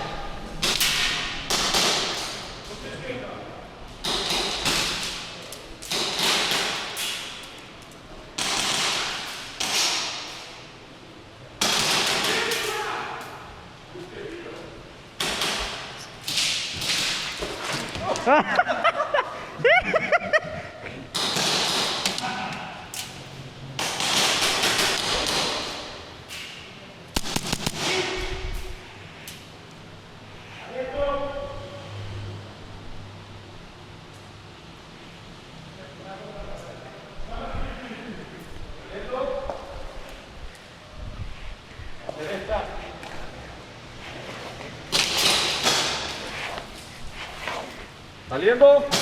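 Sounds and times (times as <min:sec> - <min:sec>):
airsoft gunshots echoing: 0:21.1 - 0:22.1, 0:23.8 - 0:26.0, 0:27.2 - 0:28.6
rustling noise: 0:39.5 - 0:48.3.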